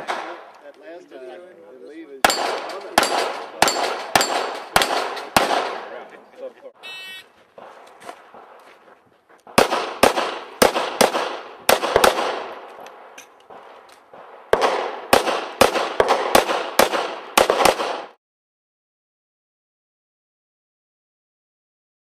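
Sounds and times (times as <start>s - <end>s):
pistol shots echoing: 0.0s - 0.5s, 2.2s - 6.0s, 9.5s - 18.2s.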